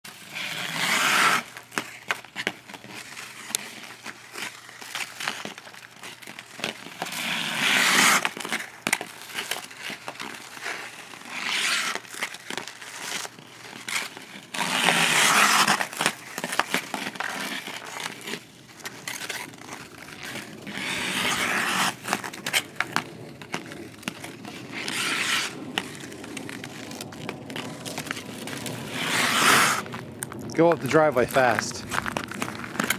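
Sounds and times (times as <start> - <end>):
ice skate blades scraping ice: 0.1 - 32.9.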